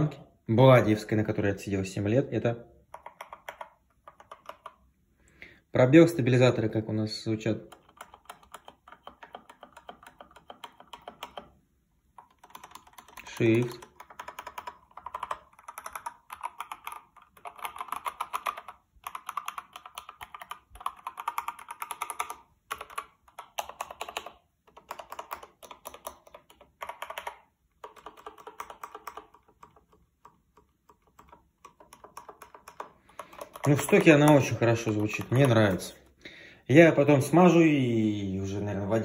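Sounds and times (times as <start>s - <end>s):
mechanical keyboard clacking: 2.9s - 4.8s, 7.6s - 11.5s, 12.2s - 36.0s.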